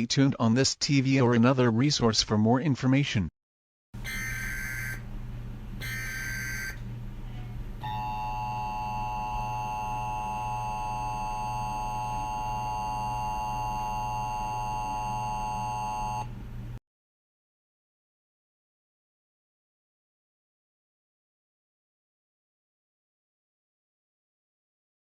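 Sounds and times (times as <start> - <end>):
two-tone alert signal: 4.0 - 5.0, 5.8 - 6.8, 7.8 - 16.3
low hum: 4.0 - 16.8.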